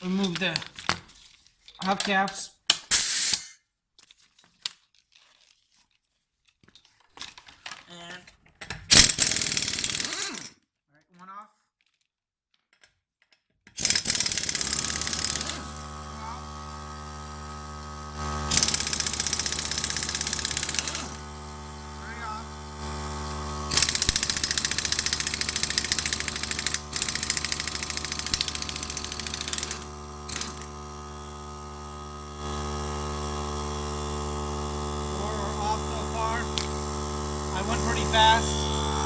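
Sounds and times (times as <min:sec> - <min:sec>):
air impact wrench hammering: 0:02.7 - 0:03.6, 0:08.9 - 0:10.4, 0:13.8 - 0:39.0
air compressor droning: 0:02.9 - 0:03.5, 0:13.8 - 0:39.0.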